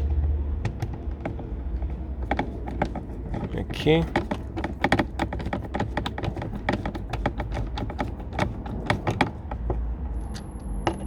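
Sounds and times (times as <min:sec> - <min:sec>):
screwdriver clicking and tapping: 0:02.3 - 0:09.6.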